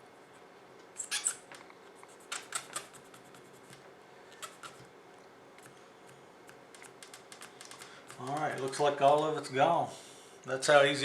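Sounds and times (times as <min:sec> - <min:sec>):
cotton swab scraping: 0:02.0 - 0:04.9.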